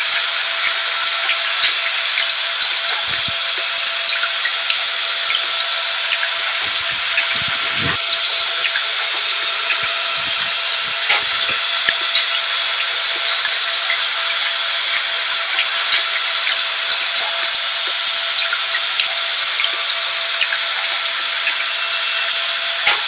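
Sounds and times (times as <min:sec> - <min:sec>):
vacuum cleaner running: 0:00.0 - 0:17.1
rain hissing: 0:00.0 - 0:18.0.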